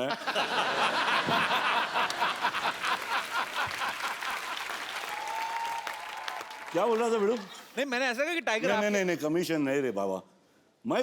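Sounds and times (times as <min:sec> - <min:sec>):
audience laughing: 0:00.0 - 0:04.7
audience clapping: 0:00.4 - 0:08.1.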